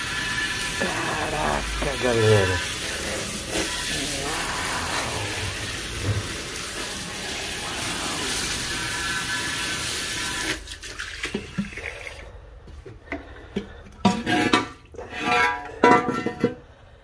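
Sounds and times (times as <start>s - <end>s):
water running from a tap: 0.0s - 12.3s.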